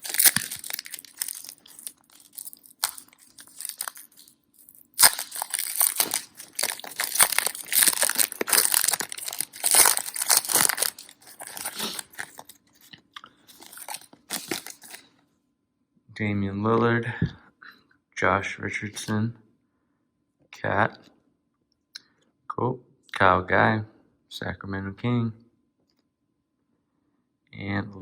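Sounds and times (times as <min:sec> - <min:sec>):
plastic wrapper tearing: 0:00.0 - 0:15.0
plastic wrapper crinkling: 0:00.0 - 0:15.1.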